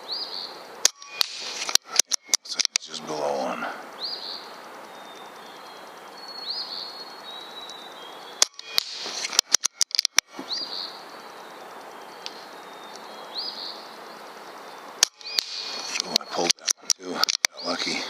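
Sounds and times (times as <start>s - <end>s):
rifle shot: 0.8s - 2.0s, 8.4s - 9.6s, 15.0s - 16.0s
sharp clicks: 0.8s - 3.0s, 8.4s - 10.6s, 15.0s - 17.7s.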